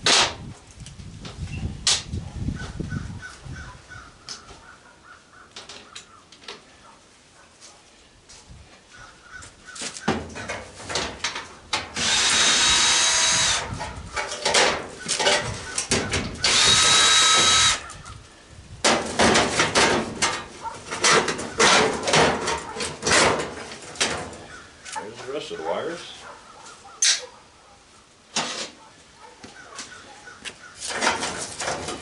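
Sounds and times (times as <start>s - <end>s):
power drill running: 12.0s - 13.7s, 16.4s - 17.8s.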